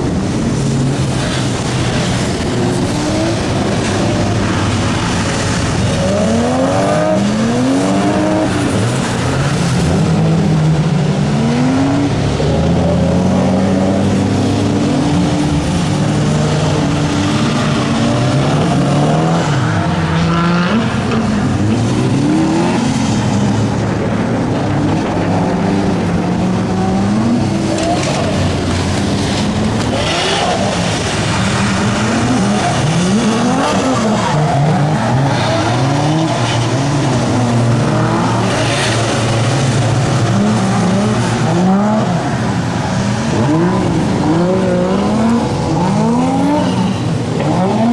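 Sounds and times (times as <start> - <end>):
car engines revving: 0.0 - 47.9.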